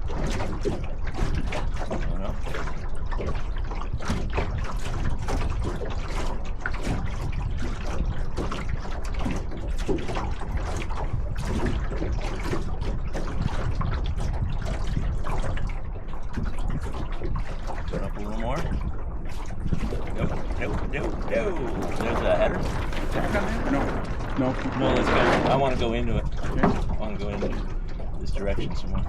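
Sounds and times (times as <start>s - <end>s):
water lapping against hull: 0.0s - 29.0s
low rumble: 13.7s - 29.0s.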